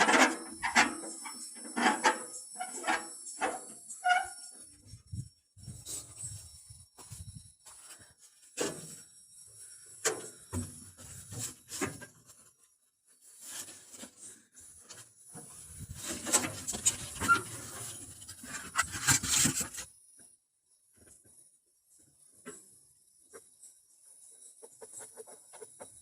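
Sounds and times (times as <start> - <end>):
scraping and rubbing: 15.4 - 19.9.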